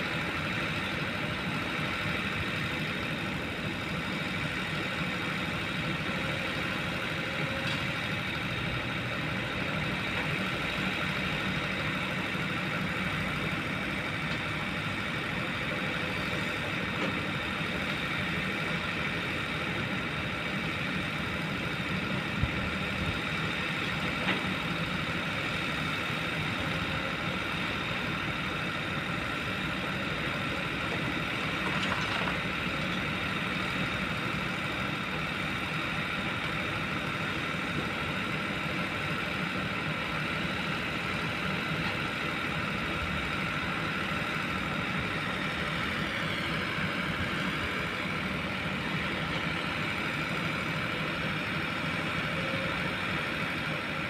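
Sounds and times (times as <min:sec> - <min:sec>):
excavator diesel engine running: 0:00.0 - 0:54.0
high steady whine: 0:00.0 - 0:54.0.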